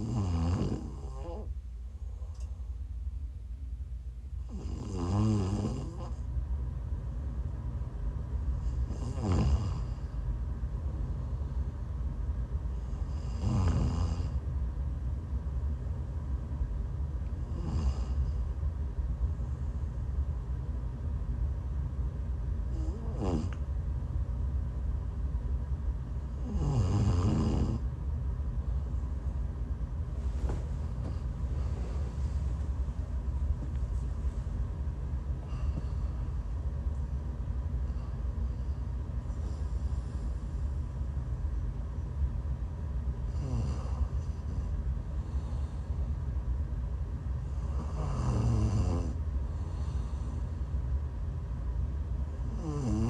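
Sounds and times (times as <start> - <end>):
woman snoring: 0.0 - 1.5, 4.5 - 6.2, 8.8 - 10.1, 13.0 - 14.4, 17.4 - 18.4, 22.7 - 23.6, 26.4 - 27.8, 43.3 - 44.3, 47.6 - 49.2, 52.5 - 53.0
low rumble: 27.8 - 43.4.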